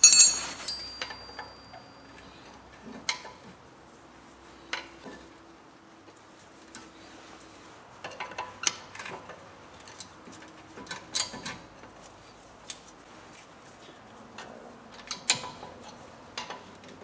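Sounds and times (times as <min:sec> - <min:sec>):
metal tools clinking: 0:00.0 - 0:02.0.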